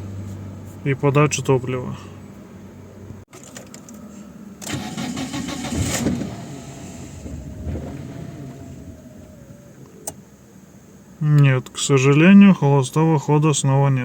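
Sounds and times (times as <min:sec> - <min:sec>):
car starter cranking: 0:04.6 - 0:10.2
car engine running: 0:04.7 - 0:10.4.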